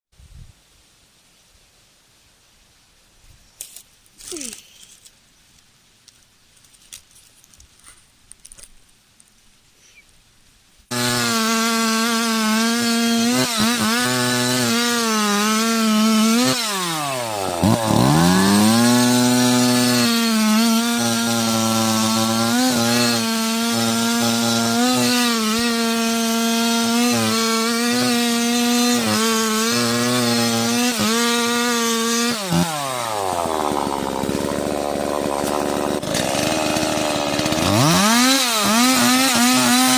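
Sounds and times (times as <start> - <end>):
chainsaw cutting wood: 10.9 - 39.9.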